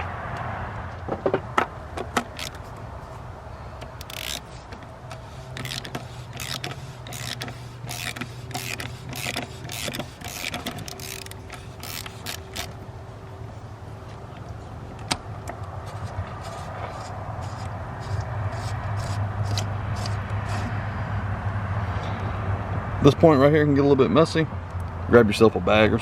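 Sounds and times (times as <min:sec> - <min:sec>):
socket ratchet clicking: 0:02.1 - 0:02.7, 0:03.8 - 0:12.8, 0:16.4 - 0:20.8.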